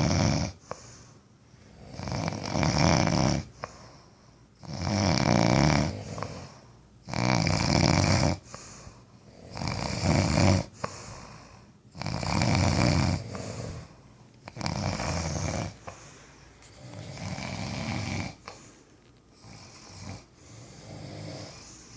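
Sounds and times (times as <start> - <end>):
loud rasping snore: 0.0 - 0.6, 1.8 - 3.5, 4.6 - 8.6, 9.3 - 11.0, 12.0 - 13.9, 14.5 - 15.8, 16.8 - 18.6, 19.4 - 21.8
quiet breaths: 0.0 - 21.9.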